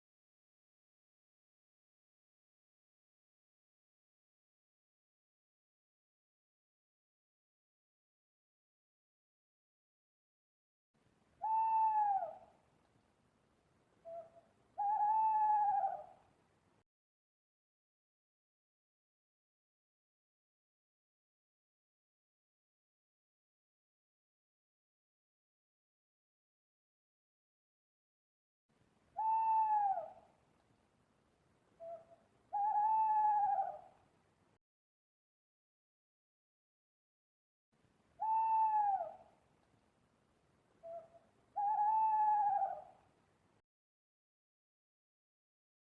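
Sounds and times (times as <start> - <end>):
owl hooting: 11.4 - 12.6, 14.0 - 16.2, 29.2 - 30.3, 31.8 - 34.0, 38.2 - 39.4, 40.8 - 43.1.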